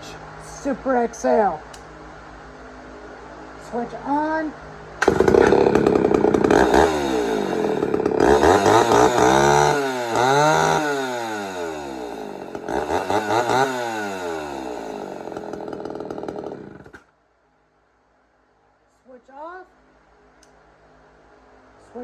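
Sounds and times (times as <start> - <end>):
chainsaws running: 5.0 - 17.1.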